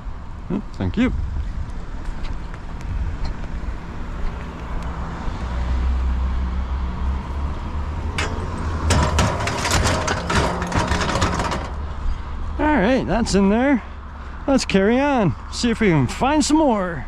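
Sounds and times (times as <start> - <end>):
low vehicle rumble: 1.2 - 16.1
metal dolly clanking and rattling: 8.0 - 12.4.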